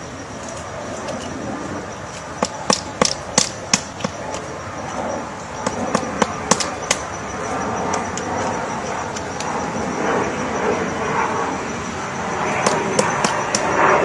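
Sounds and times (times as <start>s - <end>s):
woodpecker pecking at wood: 0.4s - 9.9s, 12.5s - 13.8s.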